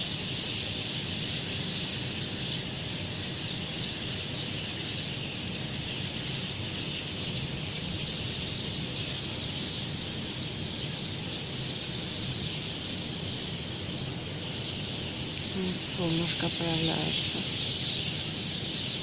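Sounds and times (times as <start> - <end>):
high-pitched chirping chorus: 0.0 - 19.0.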